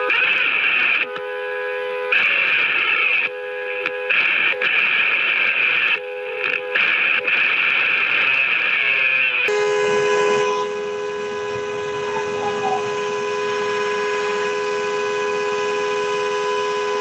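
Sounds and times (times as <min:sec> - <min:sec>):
car horn sounding: 0:01.0 - 0:02.1, 0:03.2 - 0:04.1, 0:09.5 - 0:15.2.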